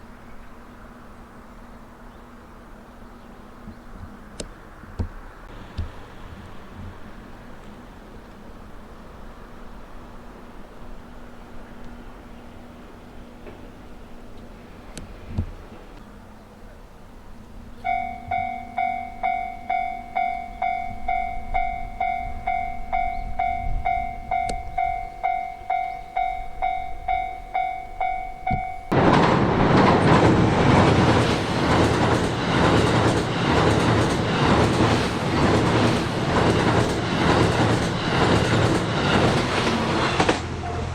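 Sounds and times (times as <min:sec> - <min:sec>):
level crossing warning bell: 0:17.8 - 0:29.1, 0:40.6 - 0:40.9
train wheels clattering: 0:28.4 - 0:40.9.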